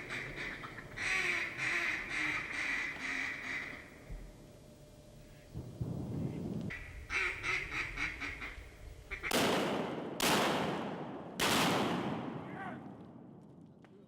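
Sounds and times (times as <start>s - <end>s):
ducks quacking: 0.0s - 3.9s, 6.7s - 9.4s
shotgun blasts: 9.3s - 13.4s.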